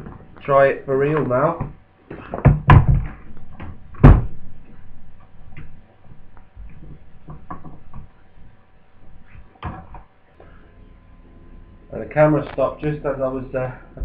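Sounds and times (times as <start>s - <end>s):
objects knocking and clunking: 0.0s - 0.4s, 1.1s - 10.2s.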